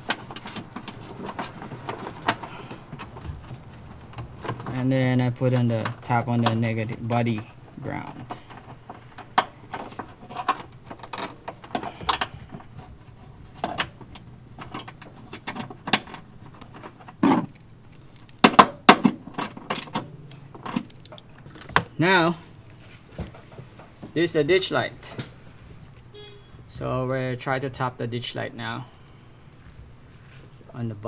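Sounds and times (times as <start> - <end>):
hand tools and metal parts clicking: 0.0 - 22.1.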